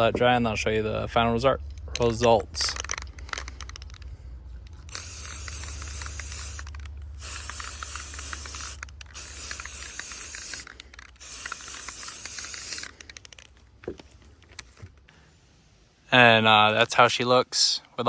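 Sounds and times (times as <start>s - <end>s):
aerosol spray can hissing: 4.7s - 13.3s.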